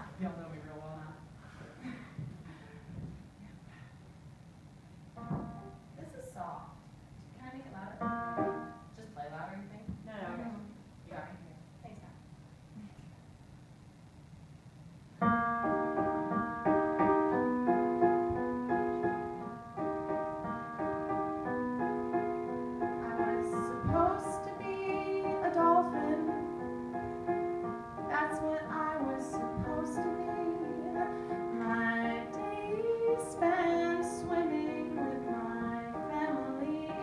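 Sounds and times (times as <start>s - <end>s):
electric keyboard piano chords: 5.2s - 6.0s, 8.0s - 9.0s, 15.2s - 37.0s
woman singing: 23.0s - 26.5s, 28.1s - 37.0s.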